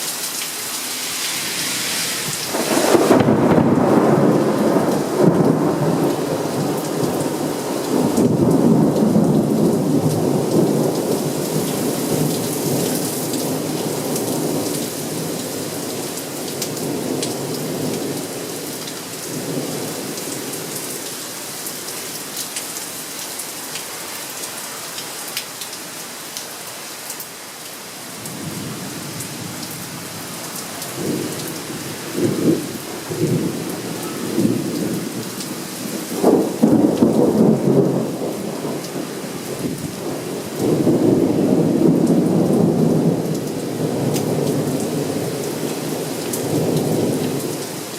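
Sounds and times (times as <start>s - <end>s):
steady rain falling: 0.0s - 47.9s
rolling thunder: 1.5s - 14.8s, 30.9s - 45.4s
sharp thunderclaps: 2.3s - 6.0s, 36.1s - 38.8s.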